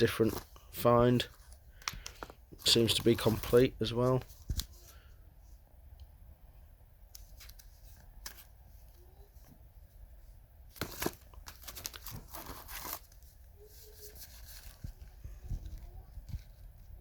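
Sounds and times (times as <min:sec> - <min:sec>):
cardboard packaging rustling: 0:00.0 - 0:04.9, 0:10.7 - 0:17.0.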